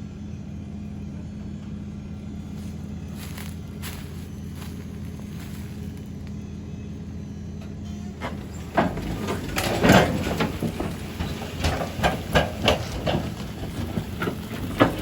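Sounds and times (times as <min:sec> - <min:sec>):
logs thumping while unloaded: 0:08.2 - 0:15.0.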